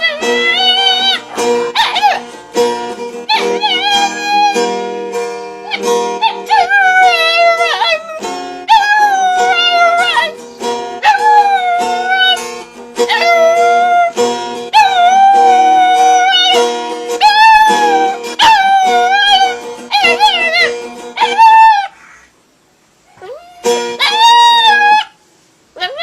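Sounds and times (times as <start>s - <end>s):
dog howling: 0.0s - 2.4s, 3.3s - 4.6s, 5.7s - 10.4s, 11.0s - 12.4s, 13.1s - 14.1s, 14.8s - 16.6s, 17.2s - 22.0s, 23.2s - 25.2s
strummed guitar chords: 0.0s - 11.0s, 11.6s - 21.2s.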